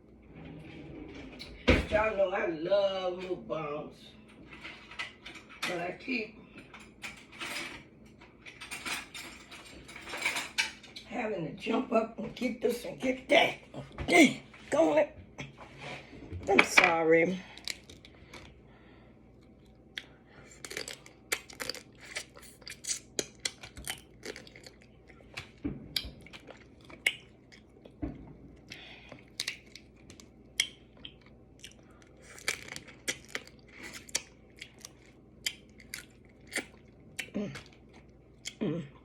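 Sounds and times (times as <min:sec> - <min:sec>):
person chewing and crunching food: 0:17.5 - 0:39.0.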